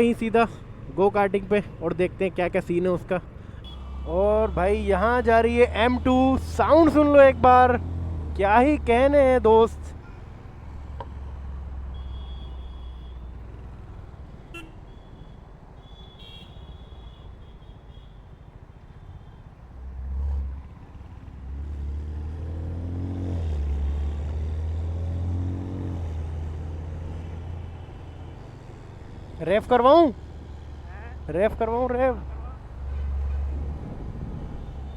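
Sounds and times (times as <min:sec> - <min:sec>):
car horn toots: 0:03.6 - 0:07.0, 0:11.9 - 0:13.4, 0:14.5 - 0:18.2, 0:32.8 - 0:33.6
car engine revving: 0:21.4 - 0:34.5.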